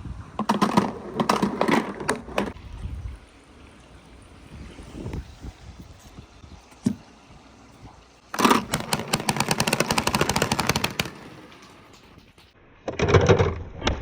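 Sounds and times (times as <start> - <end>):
marbles clicking on wooden track: 8.4 - 11.7.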